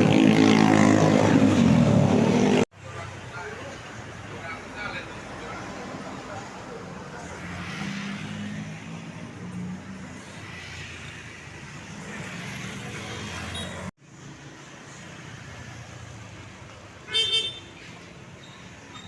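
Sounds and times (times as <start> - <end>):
passing vehicle engines rumbling: 0.0 - 19.0
road noise: 0.0 - 19.0
vehicle horn double toot: 17.1 - 17.8.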